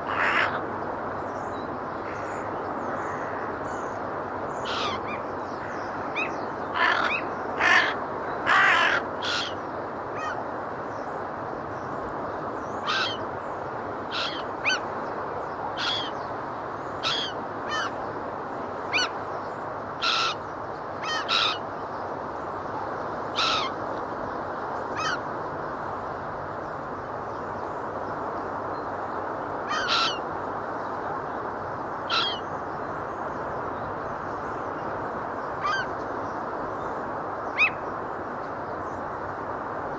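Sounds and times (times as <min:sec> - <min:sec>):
gulls calling: 0:00.0 - 0:00.6, 0:04.6 - 0:09.6, 0:12.8 - 0:13.3, 0:14.0 - 0:15.0, 0:15.8 - 0:16.2, 0:16.9 - 0:18.0, 0:18.9 - 0:19.2, 0:20.0 - 0:20.4, 0:21.0 - 0:21.7, 0:23.3 - 0:23.8, 0:24.9 - 0:25.3, 0:29.7 - 0:30.2, 0:35.6 - 0:36.0, 0:37.6 - 0:37.9.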